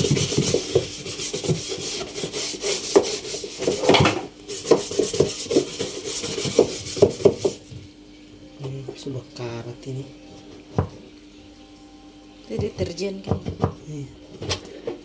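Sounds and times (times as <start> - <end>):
stiff brush scrubbing: 0.0 - 7.6.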